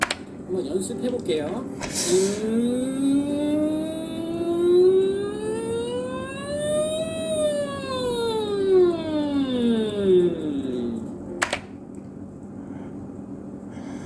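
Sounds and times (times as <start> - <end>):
person humming a rising glide: 2.1 - 11.4.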